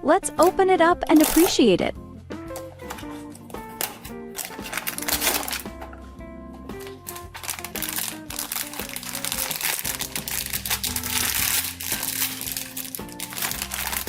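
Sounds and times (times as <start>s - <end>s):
background music: 0.0s - 14.0s
plastic packaging crinkling: 1.1s - 1.6s, 2.6s - 6.0s, 6.8s - 14.0s.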